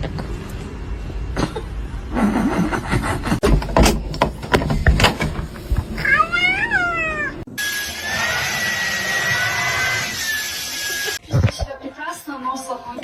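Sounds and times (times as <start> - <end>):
knocks and clatter: 3.3 - 6.0
cat meowing: 6.0 - 7.5.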